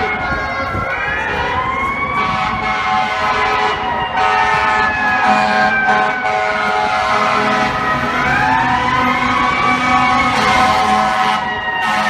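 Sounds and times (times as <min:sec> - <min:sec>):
fire engine siren wailing: 0:00.0 - 0:12.0.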